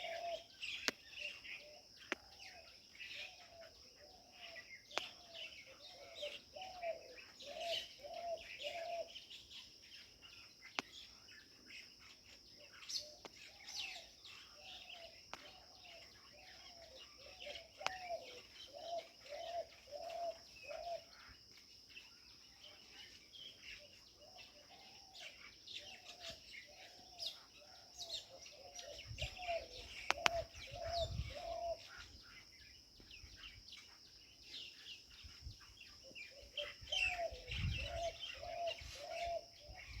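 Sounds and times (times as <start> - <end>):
birds chirping: 0.0 - 40.0
low rising-and-falling bird calls: 23.8 - 32.2.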